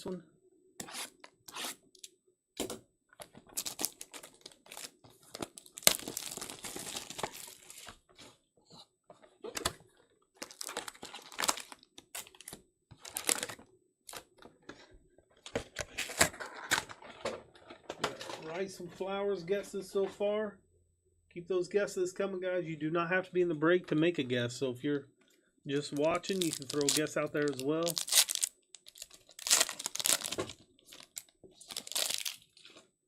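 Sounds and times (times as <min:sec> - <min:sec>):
plastic wrapping tearing: 0:03.5 - 0:07.8, 0:10.4 - 0:13.6, 0:26.0 - 0:32.8
plastic wrapping crinkling: 0:03.5 - 0:07.9, 0:10.4 - 0:13.6, 0:25.8 - 0:32.8.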